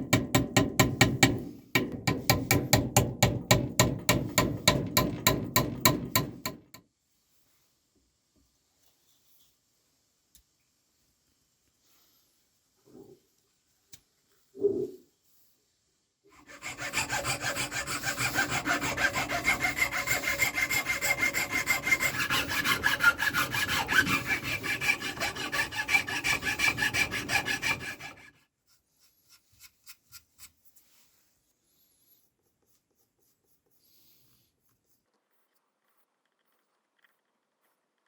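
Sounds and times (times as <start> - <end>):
file rasping on knife handle: 0.1 - 6.8, 16.3 - 30.6.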